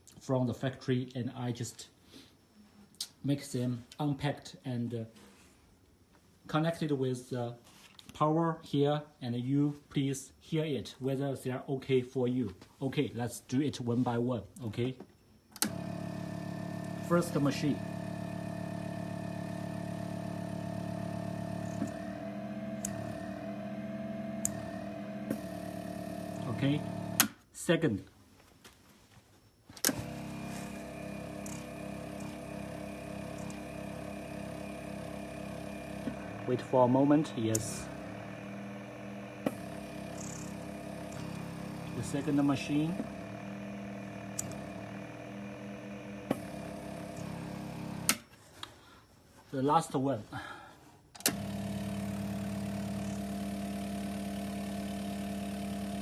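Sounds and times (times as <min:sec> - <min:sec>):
vacuum pump humming: 0:15.6 - 0:27.4, 0:29.8 - 0:48.3, 0:50.4 - 0:56.0
sharp clicks: 0:27.2 - 0:27.4.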